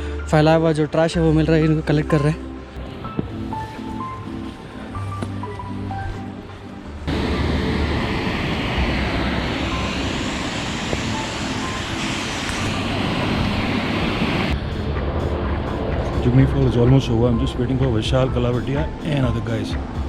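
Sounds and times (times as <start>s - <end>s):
faint background music: 0.0s - 7.7s, 11.0s - 20.0s
waterfall rushing: 7.1s - 14.5s.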